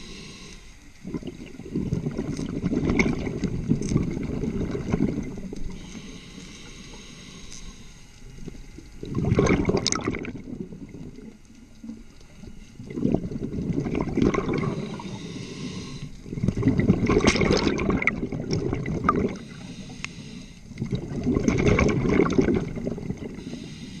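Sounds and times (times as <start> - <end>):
hissing regulator inhalations: 0.0 - 1.2, 5.6 - 8.3, 14.4 - 16.3, 19.2 - 20.8, 23.2 - 24.0
exhaled bubbles gurgling: 0.0 - 7.1, 8.2 - 20.0, 20.7 - 24.0.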